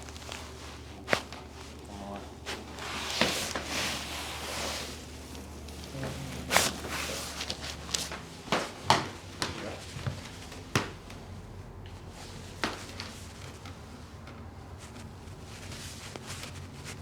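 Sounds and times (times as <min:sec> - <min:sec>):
clothing rustling on table: 0:00.0 - 0:11.1.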